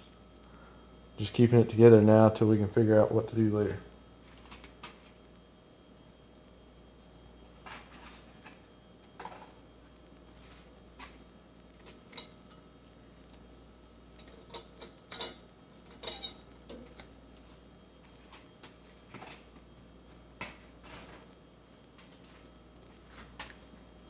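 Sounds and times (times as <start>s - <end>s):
small metal parts clinking: 14.2s - 17.1s, 20.8s - 21.3s
short metallic ring: 20.8s - 21.4s.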